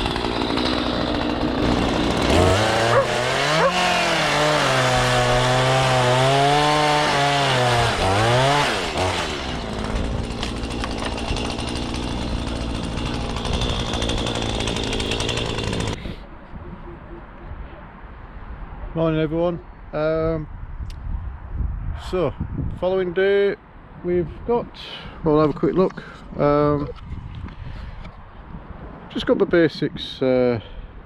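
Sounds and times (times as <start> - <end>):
chainsaw cutting wood: 0.0 - 16.0.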